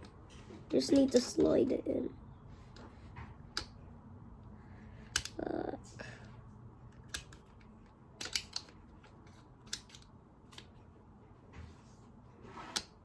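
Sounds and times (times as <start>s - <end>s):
plastic clicks and snaps: 5.1s - 5.4s, 6.9s - 10.8s.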